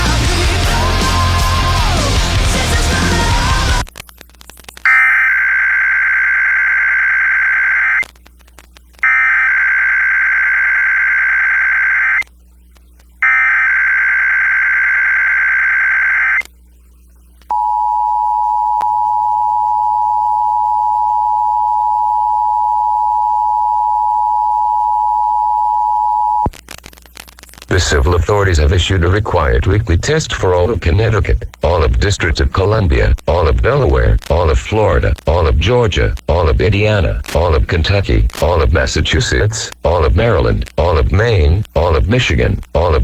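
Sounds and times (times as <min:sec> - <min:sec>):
music: 0:00.0 - 0:03.9
steady attention tone: 0:09.0 - 0:12.2.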